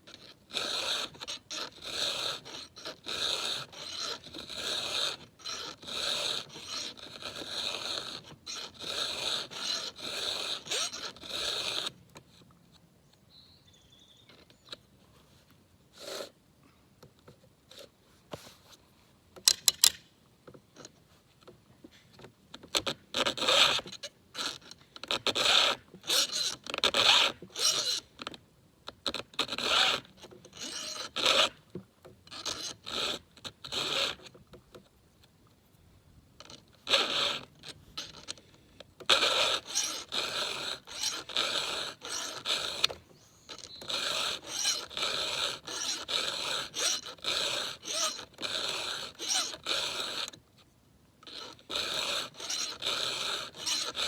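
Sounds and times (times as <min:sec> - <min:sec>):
file rasping on chainsaw chain: 0:00.1 - 0:12.0, 0:16.0 - 0:16.4, 0:22.7 - 0:28.2, 0:29.1 - 0:31.6, 0:32.3 - 0:34.4, 0:36.4 - 0:50.4, 0:51.2 - 0:54.0.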